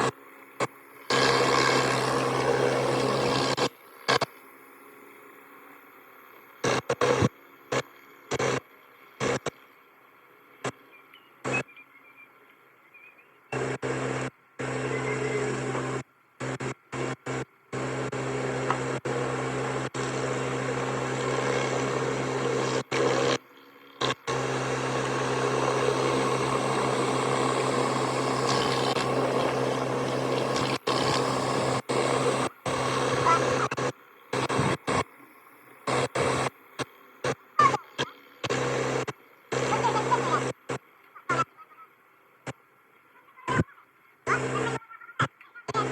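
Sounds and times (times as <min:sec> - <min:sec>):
pressure washer hum: 0:00.9 - 0:04.2, 0:13.6 - 0:35.1, 0:35.8 - 0:36.5, 0:37.2 - 0:40.8
water spray hissing: 0:24.0 - 0:35.0.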